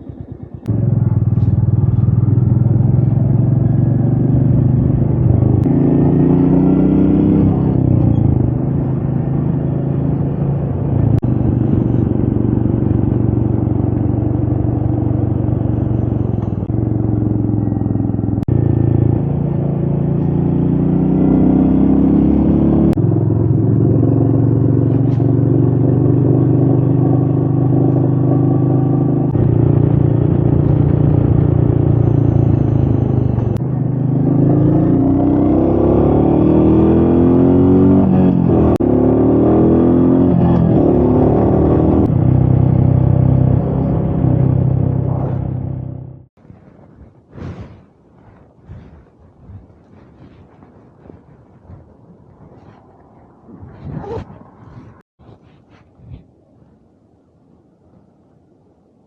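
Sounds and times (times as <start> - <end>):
motorcycle engine running: 0.0 - 46.3
wind noise: 1.4 - 59.0.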